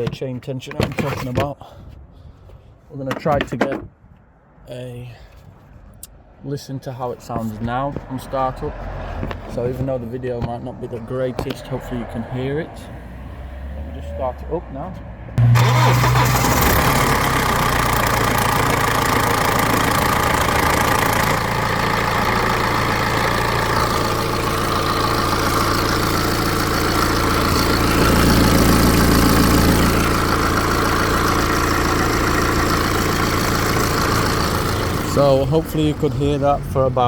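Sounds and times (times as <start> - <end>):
diesel engine idling: 15.4 - 37.0.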